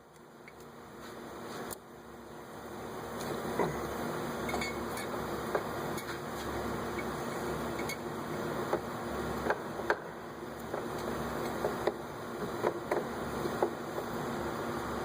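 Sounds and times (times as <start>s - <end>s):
steady background hiss: 0.0s - 15.0s.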